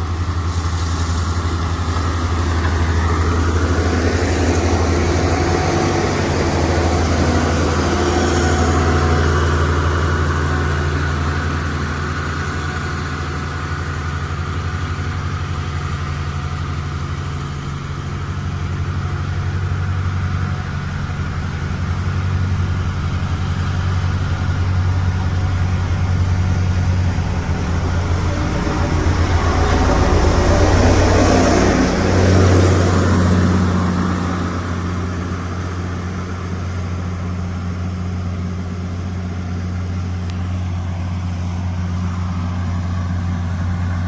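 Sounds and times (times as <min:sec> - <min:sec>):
diesel engine humming: 0:00.0 - 0:44.0.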